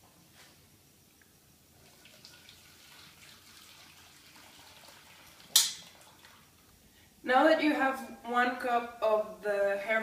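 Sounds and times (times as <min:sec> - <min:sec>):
faint trickle of liquid: 0:01.7 - 0:06.8.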